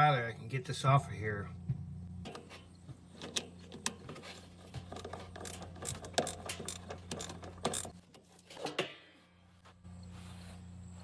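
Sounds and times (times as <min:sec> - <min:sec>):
steady low hum: 0:00.0 - 0:08.1, 0:09.0 - 0:11.0
hand tool clicking on metal: 0:05.0 - 0:08.0.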